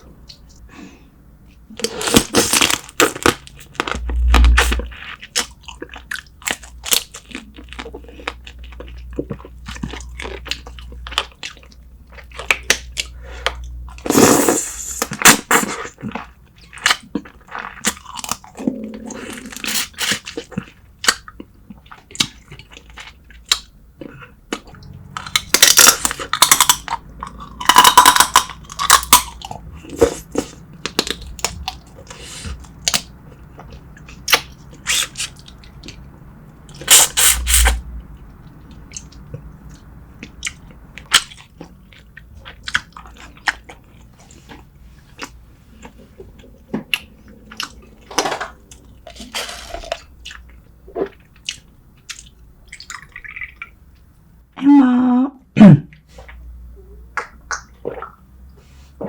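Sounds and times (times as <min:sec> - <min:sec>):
food crunching: 0:15.0 - 0:54.0
wet mouth clicks and chewing: 0:15.0 - 0:54.1, 0:55.9 - 0:58.3.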